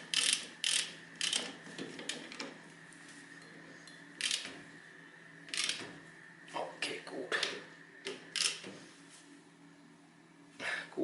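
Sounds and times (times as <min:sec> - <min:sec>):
socket ratchet clicking: 0:00.1 - 0:01.5, 0:04.2 - 0:04.5, 0:05.5 - 0:05.8, 0:08.3 - 0:08.6.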